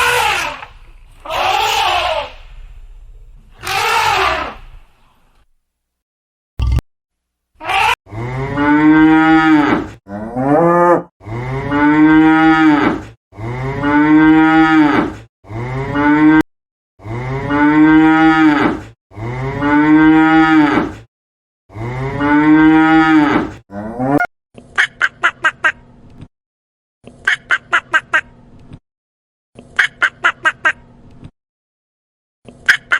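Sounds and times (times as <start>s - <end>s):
cow mooing: 8.1s - 16.4s, 17.0s - 20.8s, 21.7s - 24.3s.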